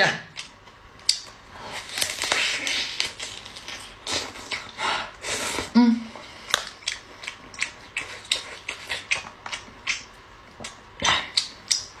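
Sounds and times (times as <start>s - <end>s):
wet chewing mouth clicks and smacks: 6.5s - 12.0s.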